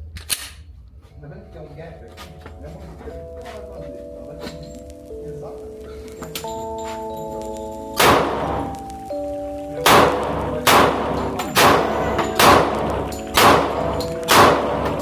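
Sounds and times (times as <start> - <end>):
background music: 0.9 - 15.0
pistol shots: 8.0 - 8.7, 9.8 - 15.0.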